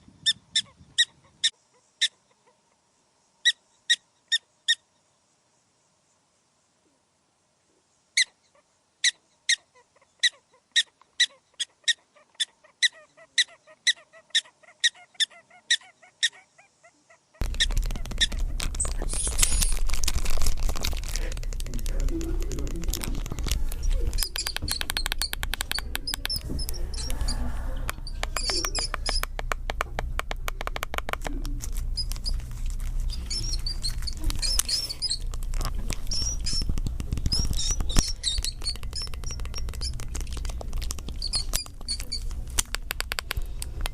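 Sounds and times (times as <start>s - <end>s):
small animal chirping: 8.2s - 43.9s
steady low rumble: 17.4s - 43.9s
clicks: 21.1s - 32.9s, 33.5s - 43.9s
high bird chirps: 23.8s - 29.5s, 33.1s - 43.2s.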